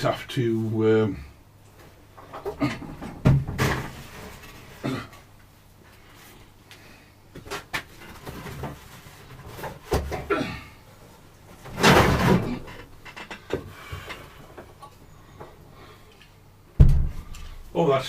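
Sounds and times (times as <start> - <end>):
workshop parts knocking and clunking: 2.2 - 4.6, 11.6 - 14.8, 16.8 - 17.7.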